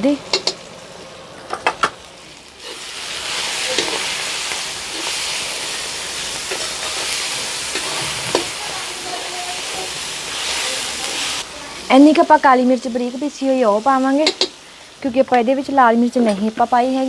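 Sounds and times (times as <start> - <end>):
vegetables sizzling in oil: 0.0 - 17.0
spoon stirring and knocking pan: 7.7 - 9.2, 14.2 - 14.5.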